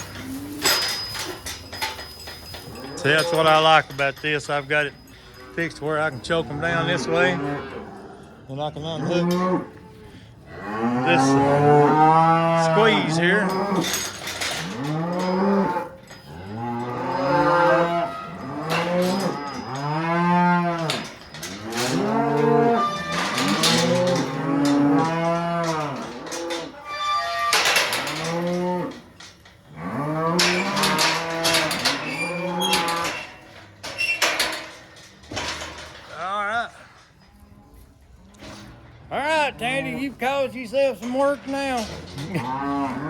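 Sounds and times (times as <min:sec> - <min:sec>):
sharp metal clanks: 0:00.0 - 0:05.7, 0:12.6 - 0:36.2
cows mooing: 0:02.7 - 0:03.7, 0:05.4 - 0:34.5, 0:41.7 - 0:43.0.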